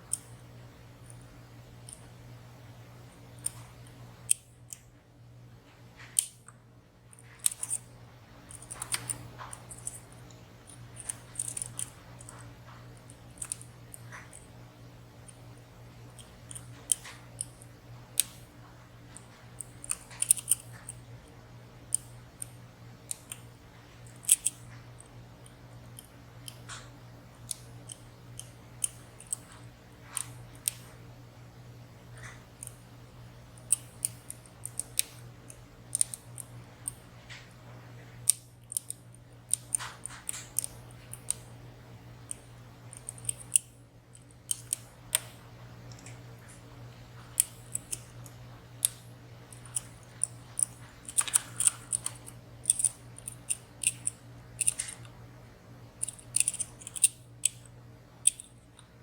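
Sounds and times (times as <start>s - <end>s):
lock picks clicking in padlock: 10.7s - 12.4s, 42.2s - 45.3s, 47.4s - 48.1s, 48.8s - 55.1s, 56.0s - 58.9s.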